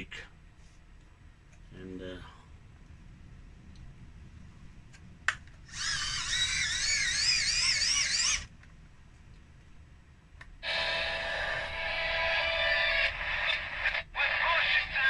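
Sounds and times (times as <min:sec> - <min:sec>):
hand-cranked dynamo whine: 0:05.7 - 0:08.5.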